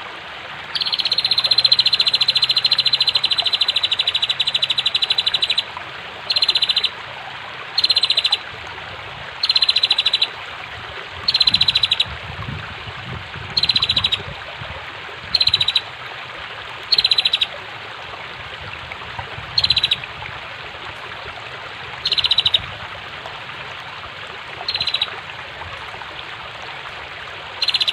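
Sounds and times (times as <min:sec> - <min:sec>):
flowing water: 0:00.0 - 0:27.9
bird ticking trill: 0:00.7 - 0:05.7, 0:06.3 - 0:06.9, 0:07.8 - 0:08.4, 0:09.4 - 0:10.3, 0:11.3 - 0:12.1, 0:13.6 - 0:14.2, 0:15.3 - 0:15.9, 0:16.9 - 0:17.5, 0:19.6 - 0:20.0, 0:22.0 - 0:22.6, 0:24.7 - 0:25.1, 0:27.6 - 0:27.9.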